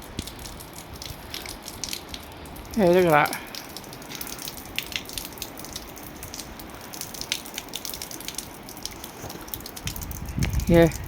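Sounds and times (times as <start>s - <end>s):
heavy rain: 0.0s - 11.0s
raindrops ticking on camera: 0.0s - 11.0s.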